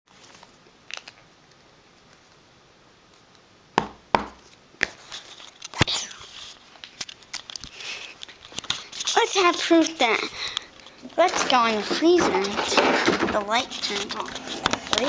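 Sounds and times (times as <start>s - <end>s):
rustling: 4.4s - 15.0s.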